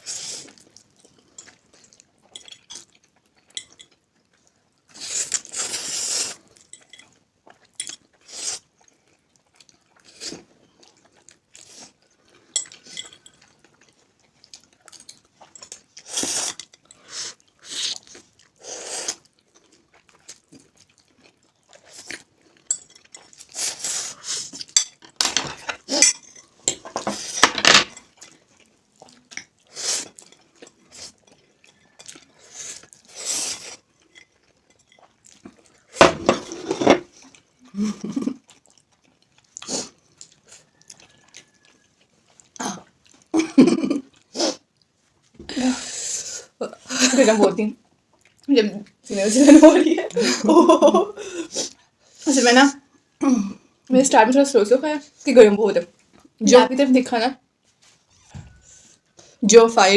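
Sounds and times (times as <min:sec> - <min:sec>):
people chewing: 0:00.0 - 0:53.9
forks clinking on bowls: 0:12.6 - 0:13.5, 0:22.7 - 0:23.4, 0:24.8 - 0:27.0.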